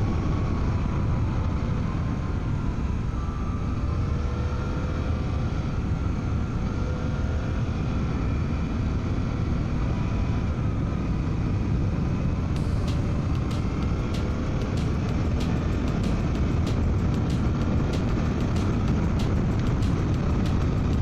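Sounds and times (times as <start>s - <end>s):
wind rush in helmet: 4.9s - 21.0s
motorcycle engine running: 11.9s - 21.0s
sharp ticks: 12.6s - 21.0s.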